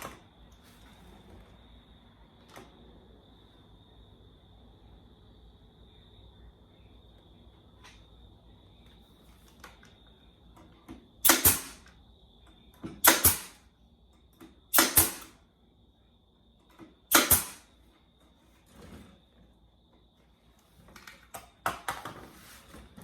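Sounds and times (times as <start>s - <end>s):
pneumatic nailer firing: 11.2s - 12.0s, 12.9s - 13.7s, 14.7s - 15.4s, 17.1s - 17.8s.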